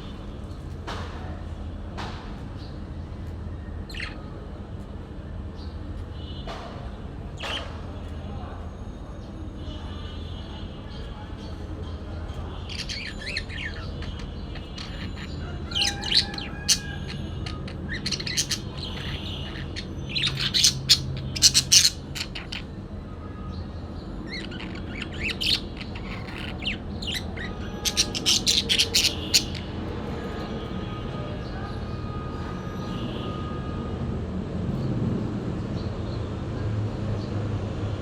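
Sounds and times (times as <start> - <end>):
parakeet chirping: 3.9 - 4.2, 7.4 - 7.6, 12.5 - 22.8, 23.4 - 29.9.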